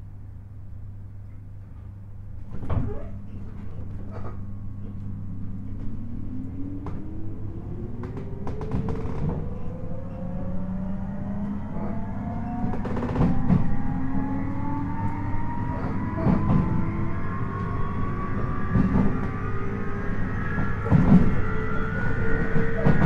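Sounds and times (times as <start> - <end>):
low train hum: 0.0 - 23.0
train motor whine rising: 4.9 - 23.0.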